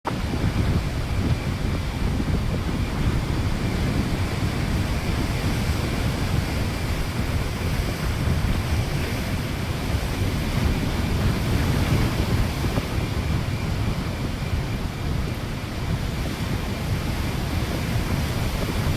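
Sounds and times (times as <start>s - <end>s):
rough sea surf: 0.1s - 18.9s
storm wind buffeting microphone: 0.1s - 18.9s.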